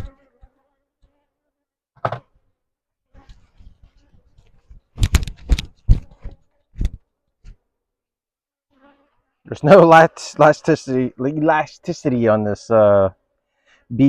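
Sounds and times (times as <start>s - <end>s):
wooden hive frames knocking: 2.0s - 2.3s.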